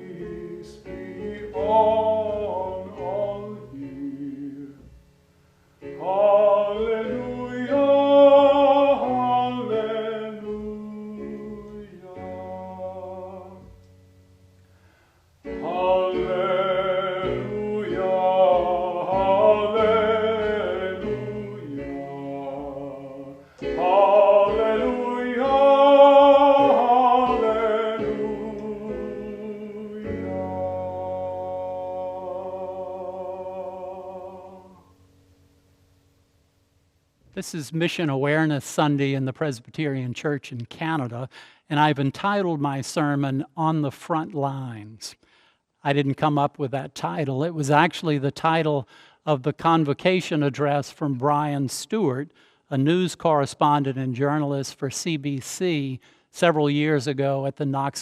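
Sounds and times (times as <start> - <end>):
person singing with vibrato: 0.0 - 5.1, 5.8 - 14.0, 15.4 - 35.1.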